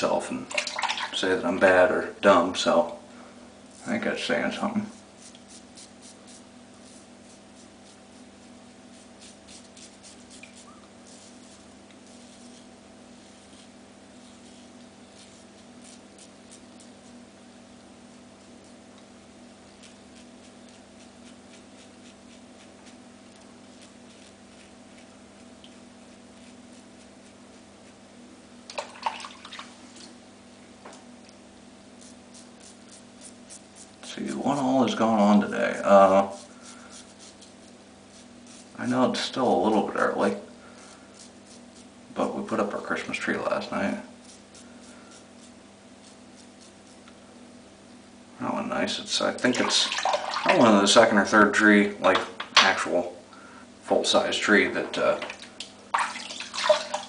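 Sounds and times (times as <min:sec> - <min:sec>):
faint steady hum: 0:00.0 - 0:57.0
razor scraping stubble: 0:03.7 - 0:17.3, 0:18.0 - 0:28.0, 0:31.9 - 0:47.2.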